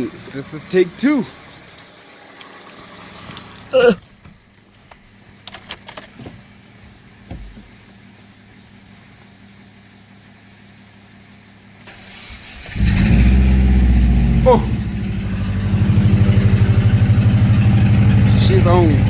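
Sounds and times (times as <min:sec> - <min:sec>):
car engine idling: 0:00.0 - 0:19.0
keys jangling and clicking: 0:05.5 - 0:06.2
thump: 0:07.3 - 0:07.7.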